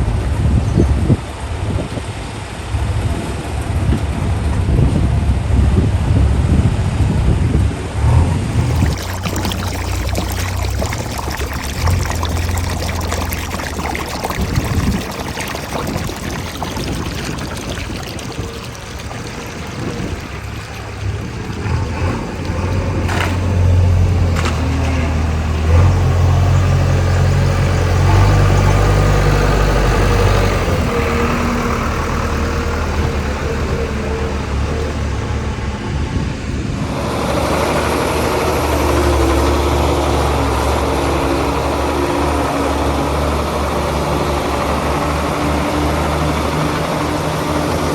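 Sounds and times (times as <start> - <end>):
heavy diesel engine under load: 19.3 - 47.9.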